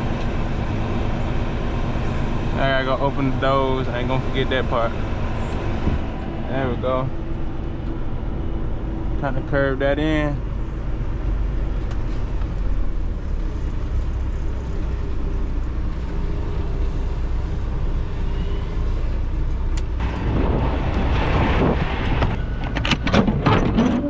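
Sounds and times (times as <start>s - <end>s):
diesel truck engine running: 0.0s - 23.4s.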